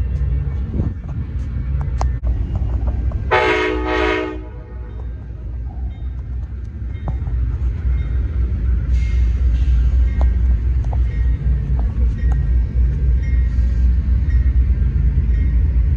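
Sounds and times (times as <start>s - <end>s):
steady low rumble: 0.0s - 15.9s
train horn blast: 3.3s - 4.9s.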